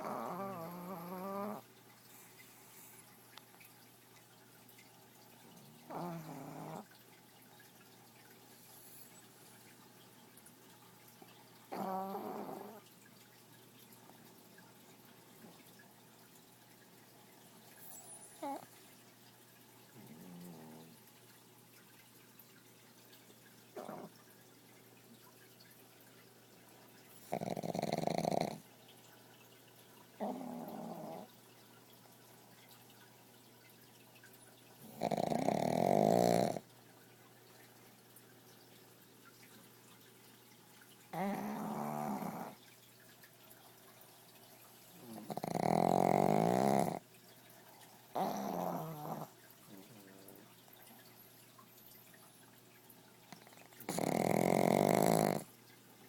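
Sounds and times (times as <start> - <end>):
dog snoring with fluttering rattle: 0.0 - 3.5, 5.4 - 7.0, 11.2 - 14.4, 17.4 - 18.9, 19.9 - 21.2, 23.7 - 24.4, 26.7 - 28.7, 30.2 - 31.4, 34.8 - 36.7, 41.0 - 42.7, 43.9 - 47.1, 47.7 - 51.2, 53.3 - 55.6.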